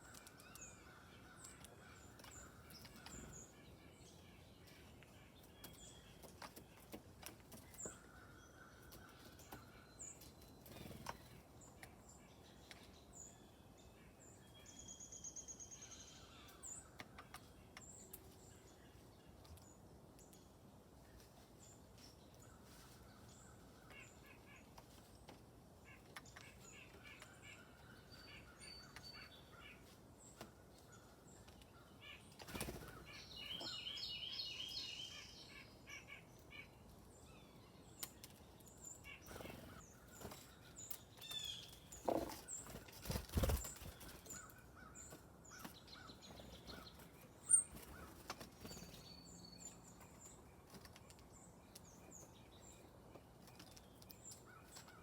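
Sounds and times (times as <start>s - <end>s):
small songbirds chirping: 0.0s - 55.0s
wing flutters: 42.1s - 44.4s.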